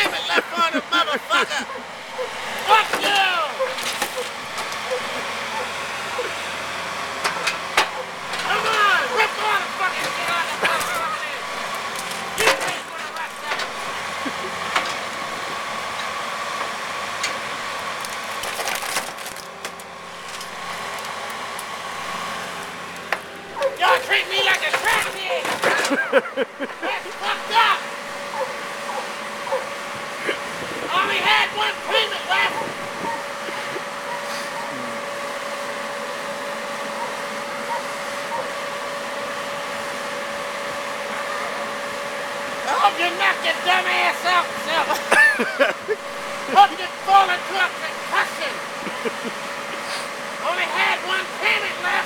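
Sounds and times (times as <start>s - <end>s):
constant whine: 0.0s - 52.0s
diesel engine running: 0.0s - 52.0s
excavator droning: 0.0s - 52.0s
car body crushed and torn: 18.1s - 20.6s.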